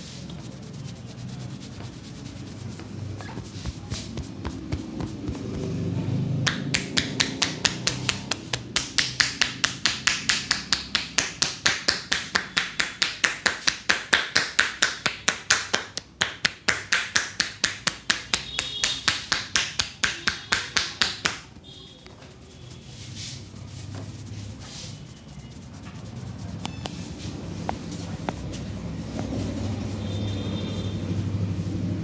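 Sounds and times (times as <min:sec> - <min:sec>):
hands slapping on a head: 0:02.8 - 0:05.7, 0:06.4 - 0:21.6, 0:26.6 - 0:29.5.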